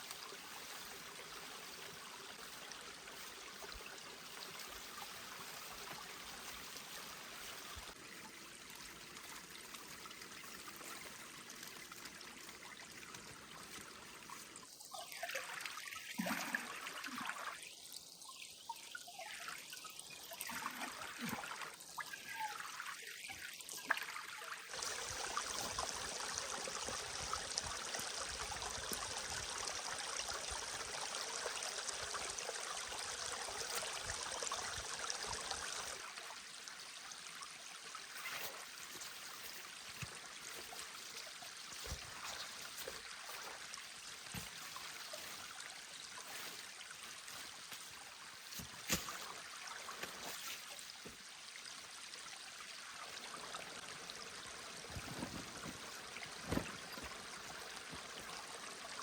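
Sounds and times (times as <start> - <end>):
water trickling and splashing: 0.0 - 59.0
stream water rushing: 52.8 - 59.0.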